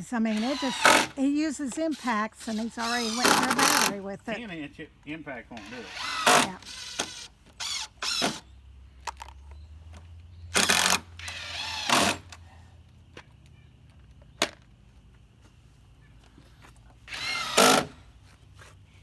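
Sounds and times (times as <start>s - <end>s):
impact driver hammering screws: 0.2s - 4.1s, 5.6s - 8.4s, 10.5s - 12.4s, 17.1s - 18.0s.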